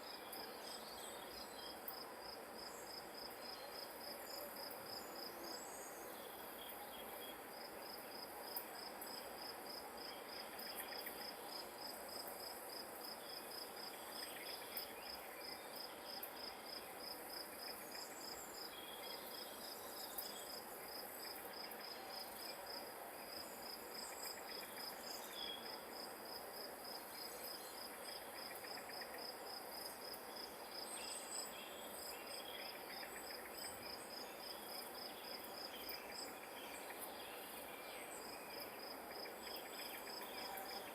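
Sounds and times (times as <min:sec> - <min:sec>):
insect chirping: 0:00.0 - 0:40.9
steady outdoor hiss: 0:00.0 - 0:40.9.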